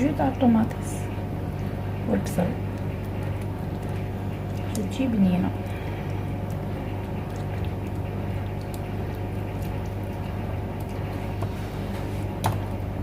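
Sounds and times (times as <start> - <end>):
steady low hum: 0.0 - 13.0
sauce simmering and bubbling: 5.5 - 13.0.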